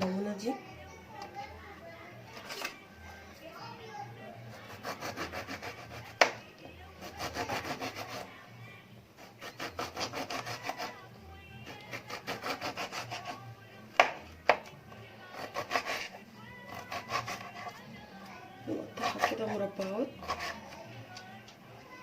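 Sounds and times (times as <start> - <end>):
knife sawing through lemon: 4.5 - 6.3, 7.0 - 8.4, 9.2 - 11.0, 11.7 - 13.4, 15.3 - 17.8, 18.9 - 20.8.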